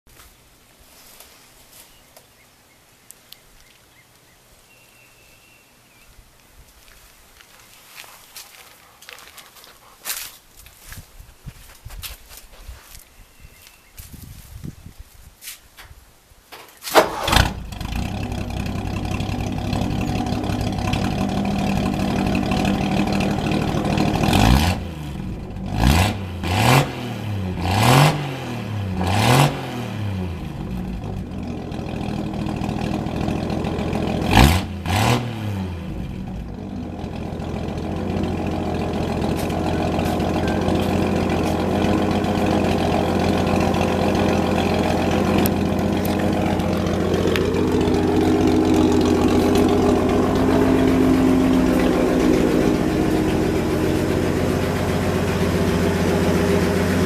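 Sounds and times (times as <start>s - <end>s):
engine revving and idling: 17.0s - 57.0s.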